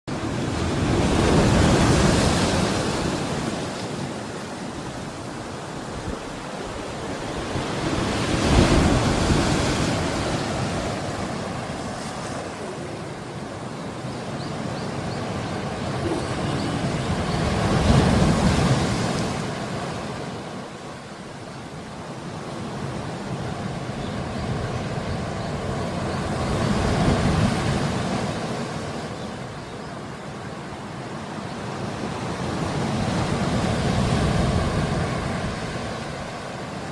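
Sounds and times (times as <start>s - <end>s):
ocean surf breaking: 0.1s - 21.0s.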